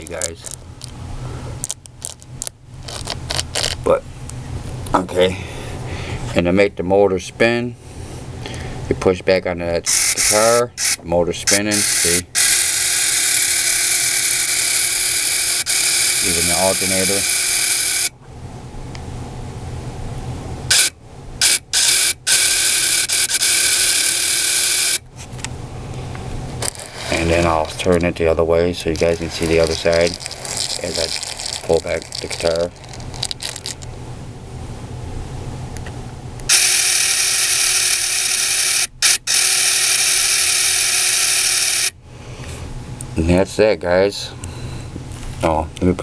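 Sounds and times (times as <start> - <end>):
model car pull-back mechanism whirring: 11.7 - 18.1, 20.7 - 25.0, 36.5 - 42.0.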